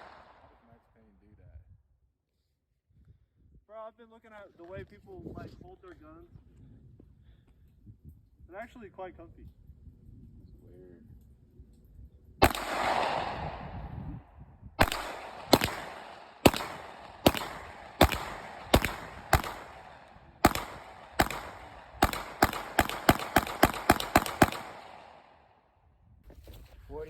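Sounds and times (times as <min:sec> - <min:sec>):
gunshots with echo: 0:00.0 - 0:00.6, 0:12.4 - 0:14.1, 0:14.8 - 0:25.4.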